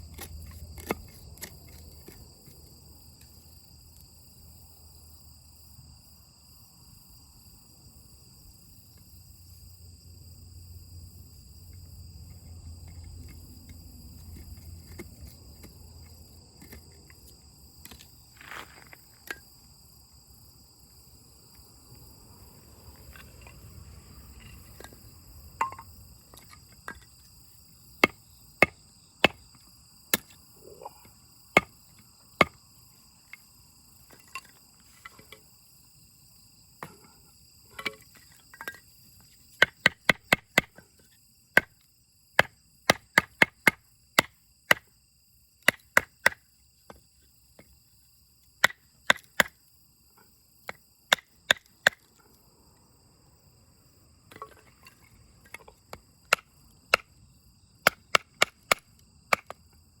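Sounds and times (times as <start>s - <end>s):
firewood being chopped: 0.0s - 2.2s, 28.0s - 30.4s, 31.5s - 32.6s, 39.6s - 40.9s, 42.4s - 44.9s, 45.6s - 47.0s, 48.6s - 49.6s, 50.6s - 52.1s, 55.5s - 57.1s, 57.8s - 59.6s
high insect trill: 0.0s - 60.0s.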